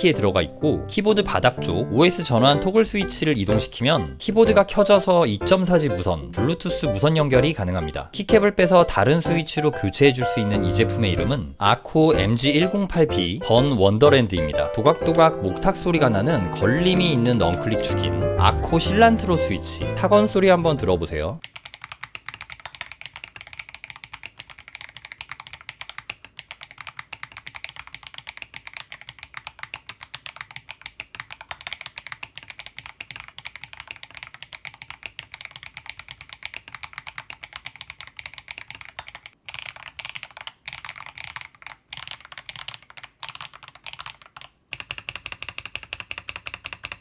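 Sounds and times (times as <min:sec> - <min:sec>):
mechanical keyboard typing: 0:12.1 - 0:47.0.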